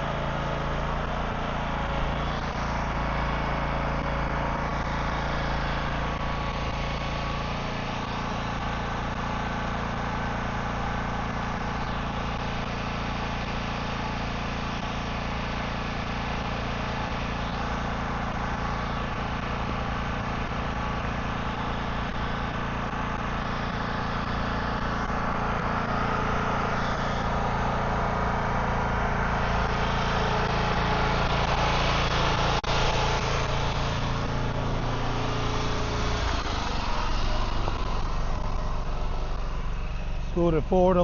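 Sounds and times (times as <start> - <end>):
engine running: 0.0 - 41.0.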